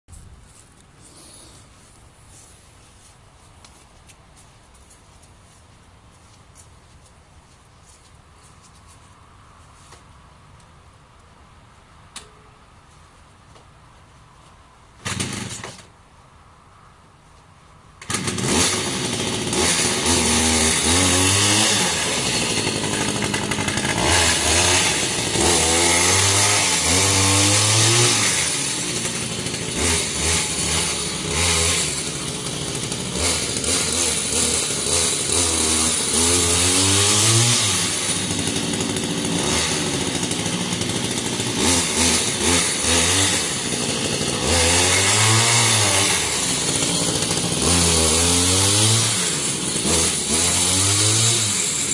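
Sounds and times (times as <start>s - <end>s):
two-stroke engine revving: 18.0s - 51.9s.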